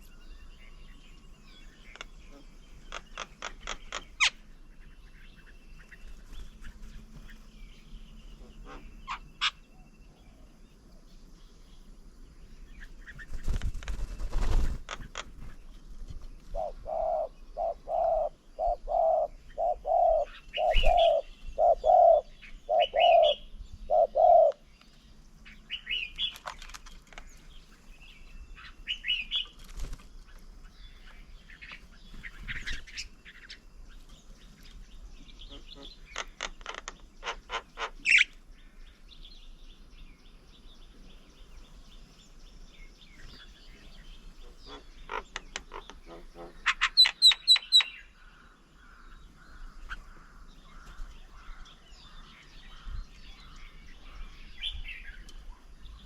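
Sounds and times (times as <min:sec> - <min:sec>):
birds high chirps: 0:00.0 - 0:56.0
bird rapid chattering call: 0:01.8 - 0:04.5, 0:16.6 - 0:24.6, 0:35.4 - 0:38.3, 0:44.4 - 0:48.1.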